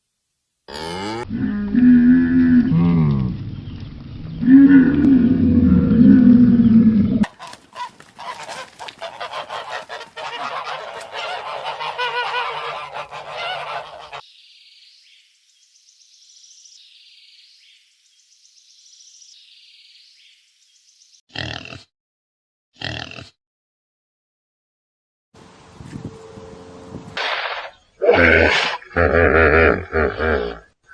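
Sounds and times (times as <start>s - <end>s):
geese honking: 7.2s - 14.2s.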